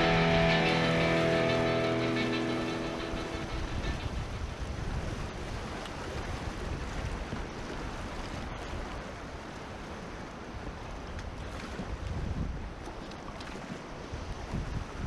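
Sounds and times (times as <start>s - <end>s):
river water rushing: 0.0s - 11.7s
wind buffeting microphone: 0.0s - 12.9s, 13.8s - 15.0s.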